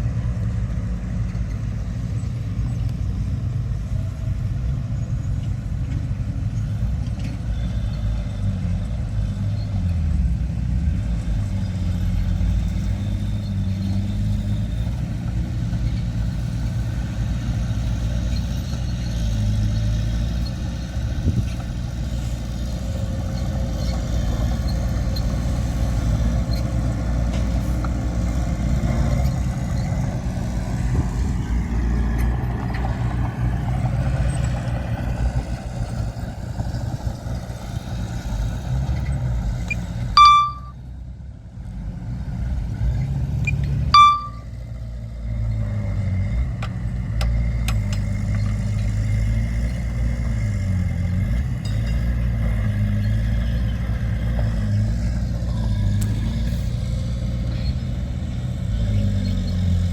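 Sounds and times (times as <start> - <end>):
diesel engine rumbling: 0.0 - 59.9
loud high beeps: 40.2 - 40.8, 44.0 - 44.5.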